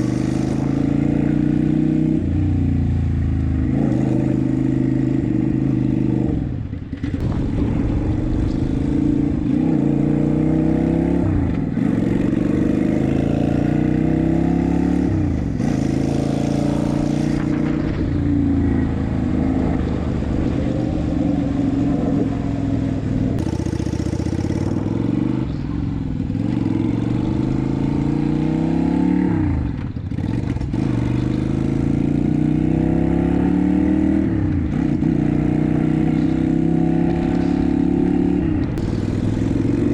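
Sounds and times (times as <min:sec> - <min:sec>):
motorcycle engine accelerating: 0:00.0 - 0:39.9
wind noise on microphone: 0:14.5 - 0:23.6.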